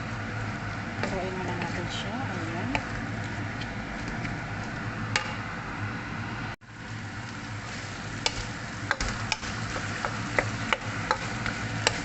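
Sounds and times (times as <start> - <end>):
food sizzling in a pot: 6.6 - 12.0.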